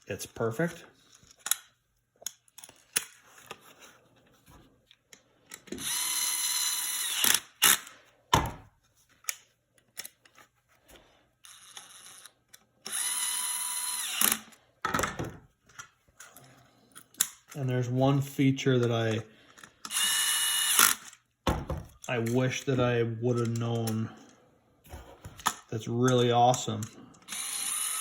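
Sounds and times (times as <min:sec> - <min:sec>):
electric screwdriver whining: 0:05.7 - 0:07.9, 0:11.5 - 0:14.5, 0:19.9 - 0:21.2, 0:27.2 - 0:28.0.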